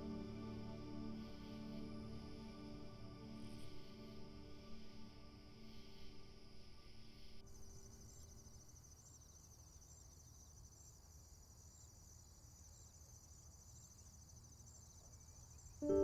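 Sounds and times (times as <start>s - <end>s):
crickets chirping: 0.0s - 16.0s.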